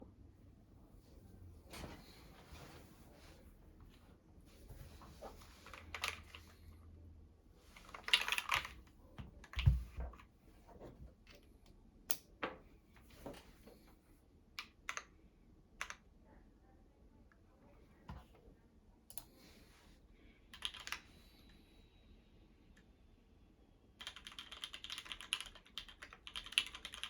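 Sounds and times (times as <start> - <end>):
mechanical keyboard keystrokes: 20.6 - 21.0, 24.0 - 27.0.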